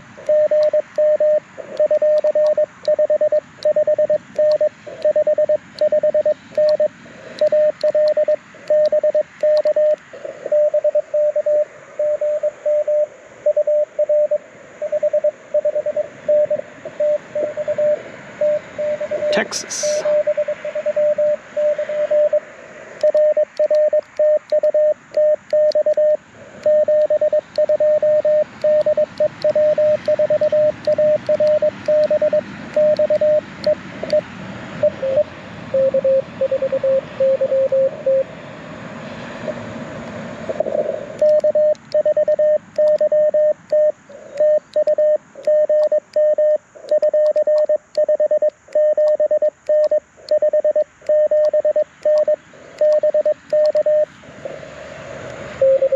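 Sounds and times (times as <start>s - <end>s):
lower-pitched morse signal: 0.2s - 22.4s, 23.0s - 34.2s, 34.8s - 38.3s, 40.7s - 54.1s, 55.6s - 55.9s
morse code tone: 0.2s - 22.4s, 23.0s - 34.2s, 34.8s - 38.2s, 41.2s - 54.1s, 55.6s - 55.9s
radio band hiss: 19.0s - 20.3s.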